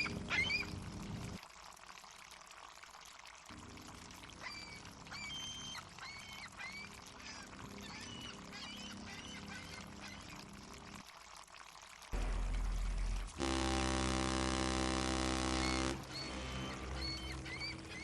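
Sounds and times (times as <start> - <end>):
seagulls crying: 16.1 - 18.0.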